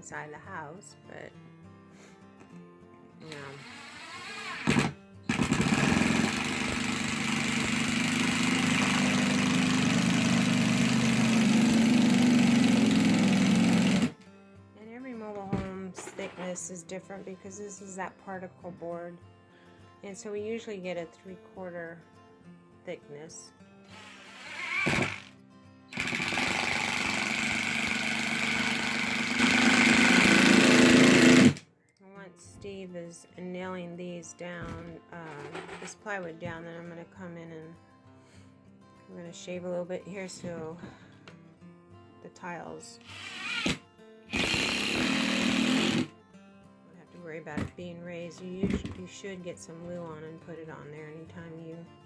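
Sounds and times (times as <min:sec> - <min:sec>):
power driver driving screw into wood: 0:03.3 - 0:14.2, 0:23.9 - 0:25.3, 0:25.9 - 0:31.6, 0:43.0 - 0:46.1.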